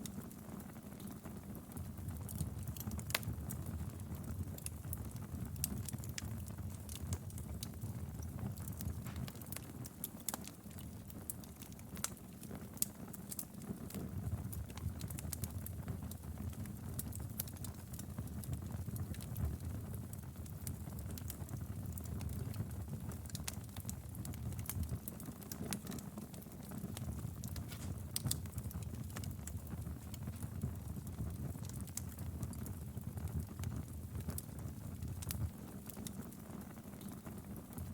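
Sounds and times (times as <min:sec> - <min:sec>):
fire crackles and pops: 0:00.0 - 0:37.9
rumble of flames: 0:00.0 - 0:37.9.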